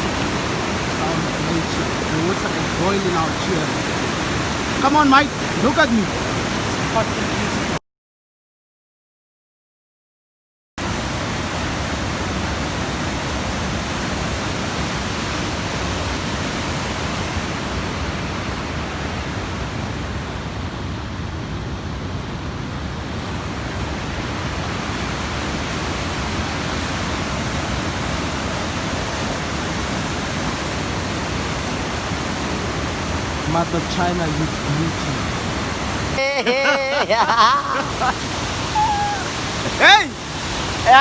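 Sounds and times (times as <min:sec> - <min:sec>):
waterfall rushing: 0:00.0 - 0:07.8, 0:23.4 - 0:41.0.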